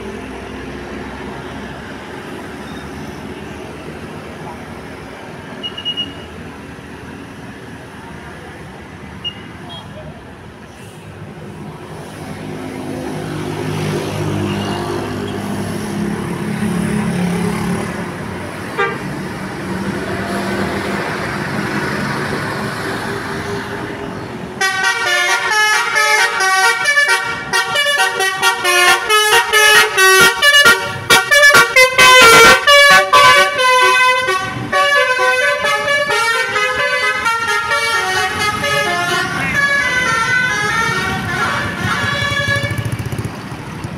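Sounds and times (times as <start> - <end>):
bus engine rumbling: 0.0 - 43.9
musical bus horn tune: 18.8 - 19.1, 24.6 - 43.0.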